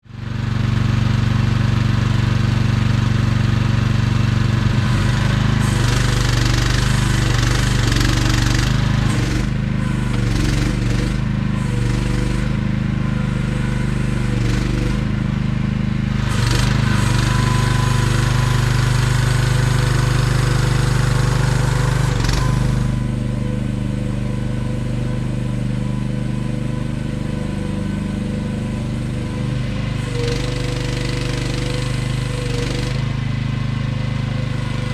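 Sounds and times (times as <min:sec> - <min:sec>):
mini excavator engine running: 0:00.0 - 0:34.9
machine clatter: 0:04.9 - 0:12.5.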